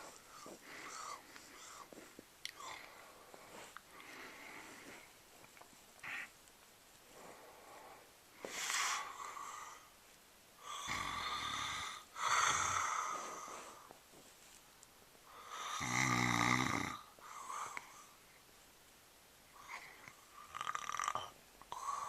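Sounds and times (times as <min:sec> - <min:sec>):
person snoring: 0:10.6 - 0:13.8, 0:15.3 - 0:17.9, 0:19.6 - 0:22.0.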